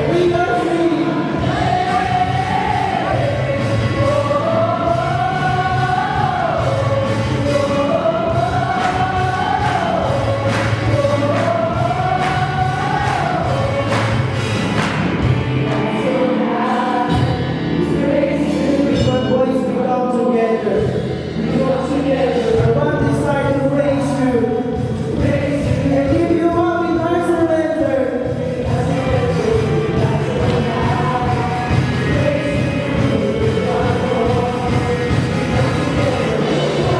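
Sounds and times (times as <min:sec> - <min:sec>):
group singing slow worship song: 0:00.0 - 0:22.8, 0:28.2 - 0:36.9
musical accompaniment: 0:00.0 - 0:26.8, 0:28.3 - 0:36.9
steady instrumental backing: 0:00.0 - 0:36.9.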